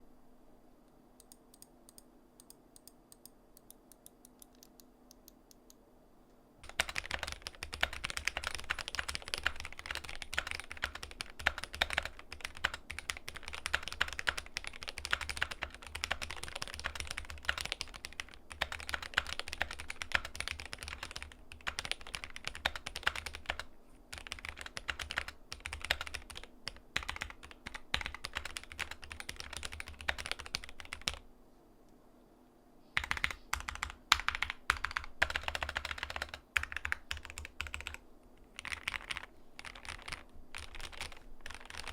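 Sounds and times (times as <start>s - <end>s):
mechanical keyboard typing: 6.6s - 31.2s, 33.0s - 41.9s.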